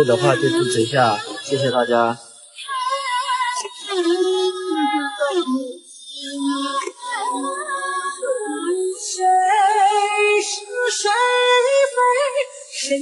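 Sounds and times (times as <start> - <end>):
ballad music: 0.0 - 2.3.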